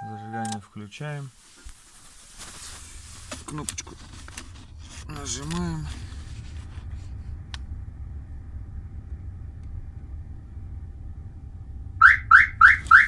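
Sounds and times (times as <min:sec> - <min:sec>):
car alarm chirps: 0:00.0 - 0:00.6, 0:12.0 - 0:13.0
steady low rumble: 0:00.6 - 0:13.0.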